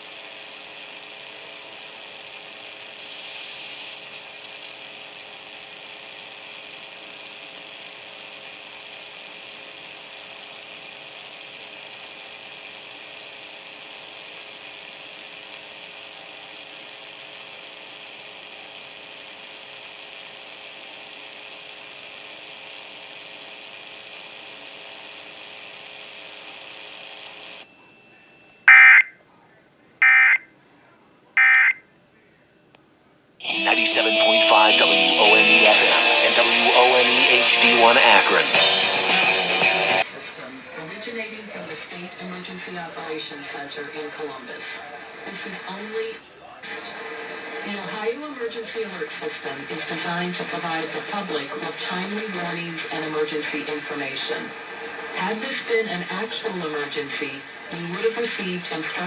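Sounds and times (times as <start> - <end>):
radio electrical hum and hiss: 0.0 - 59.0
digital alert data tones: 28.7 - 29.1.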